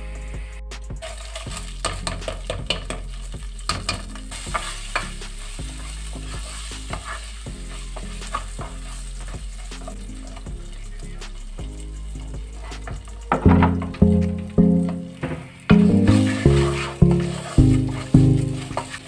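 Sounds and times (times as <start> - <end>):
food sizzling in a pan: 1.0 - 10.4.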